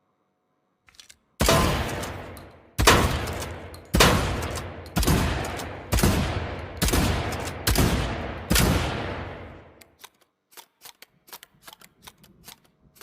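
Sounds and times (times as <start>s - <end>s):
shotgun blasts echoing: 1.4s - 9.8s.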